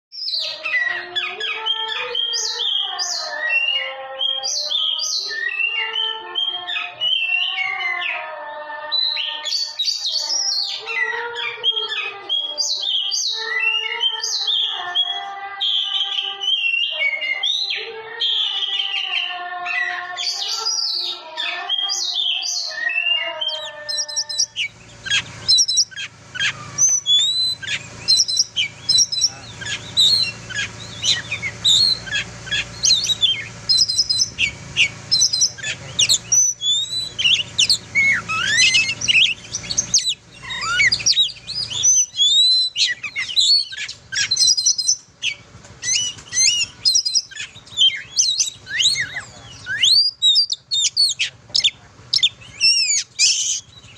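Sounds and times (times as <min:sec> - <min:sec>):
bird singing whistled notes: 0:00.1 - 0:08.2, 0:08.9 - 0:53.9
low steady hum: 0:23.5 - 0:53.9.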